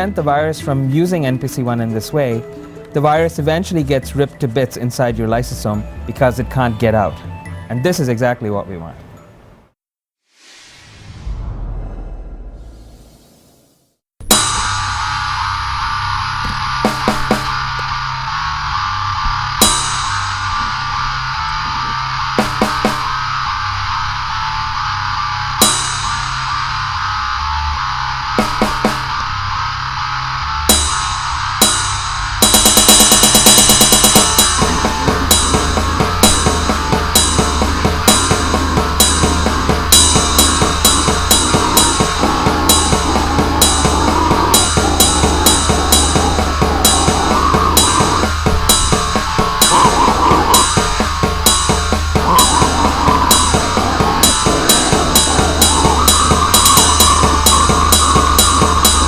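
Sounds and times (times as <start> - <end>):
heavily distorted guitar: 14.2 - 59.0
cymbals: 14.3 - 59.0
fast dense drumming: 16.8 - 17.7, 22.4 - 23.2, 28.4 - 29.2, 30.7 - 59.0.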